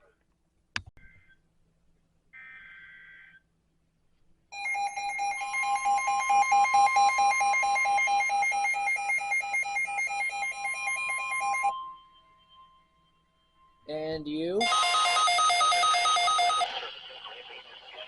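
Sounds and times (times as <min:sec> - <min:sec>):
rapid alert alarm beeps: 0:04.6 - 0:11.8, 0:14.6 - 0:18.0
steady warning alarm tone: 0:04.6 - 0:13.9, 0:14.6 - 0:17.6.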